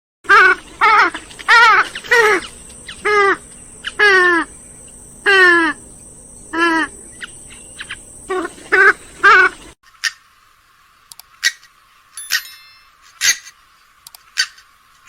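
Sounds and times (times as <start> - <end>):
swamphen nasal calls: 0.3 - 10.2.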